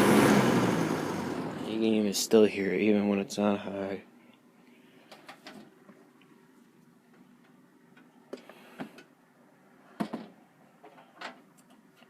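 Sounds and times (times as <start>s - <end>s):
box fan buzzing: 0.0s - 2.2s.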